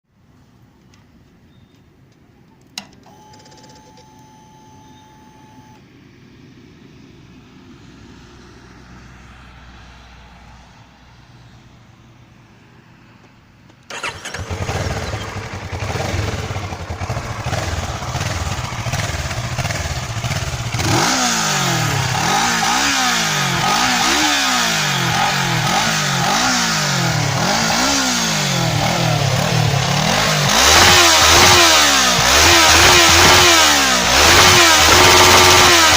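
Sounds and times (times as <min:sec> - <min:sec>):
engine revving: 0:13.9 - 0:35.9
motorcycle engine idling: 0:13.9 - 0:35.9.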